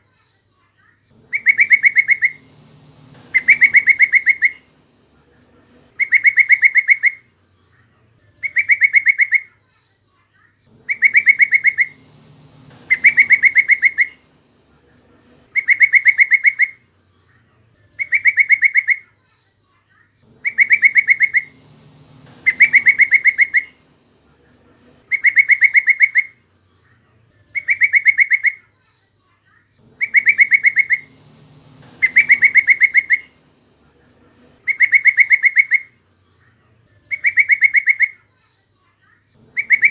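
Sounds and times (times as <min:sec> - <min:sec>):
bird chattering call: 0:01.2 - 0:07.3, 0:08.4 - 0:09.5, 0:10.7 - 0:16.9, 0:18.0 - 0:19.1, 0:20.3 - 0:26.4, 0:27.5 - 0:28.6, 0:29.8 - 0:36.0, 0:37.1 - 0:38.2, 0:39.4 - 0:39.9.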